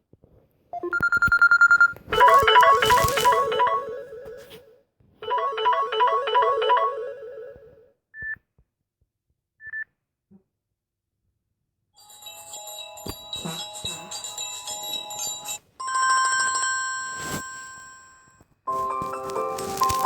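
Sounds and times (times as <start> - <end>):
electronic phone ringtone melody: 0.8 - 4.6, 5.2 - 7.7, 12.0 - 20.0
electronic ringtone tune: 0.8 - 4.6, 5.2 - 7.7.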